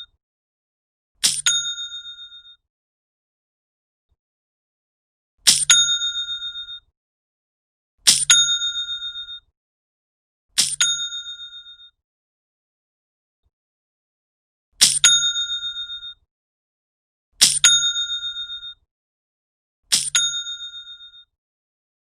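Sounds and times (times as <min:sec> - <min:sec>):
cash register clack: 0:05.5 - 0:05.7, 0:08.1 - 0:08.3, 0:10.6 - 0:10.9, 0:14.8 - 0:15.1, 0:17.4 - 0:17.7, 0:19.9 - 0:20.2.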